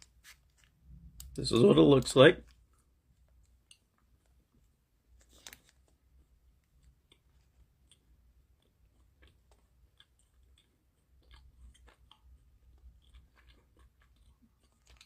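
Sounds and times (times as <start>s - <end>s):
chewing candy bar: 6.6s - 15.0s.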